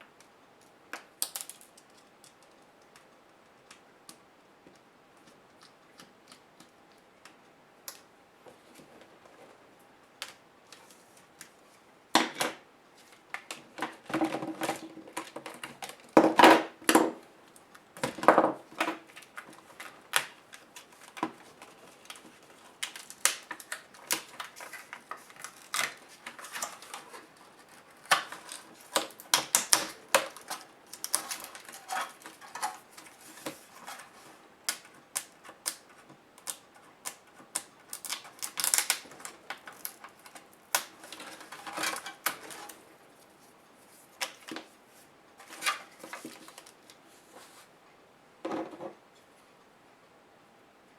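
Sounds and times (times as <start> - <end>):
small parts clicking and tapping: 0.2 - 8.1.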